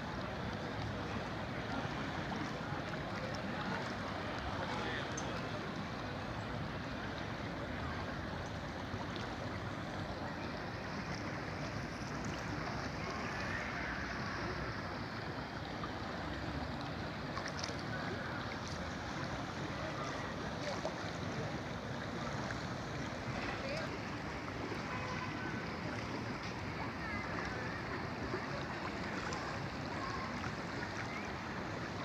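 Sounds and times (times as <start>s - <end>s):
river water rushing: 0.0s - 32.0s.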